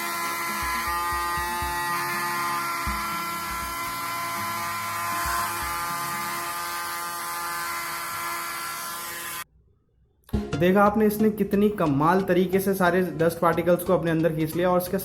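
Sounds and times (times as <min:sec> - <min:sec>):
small vacuum cleaner motor whine: 0:00.0 - 0:09.5.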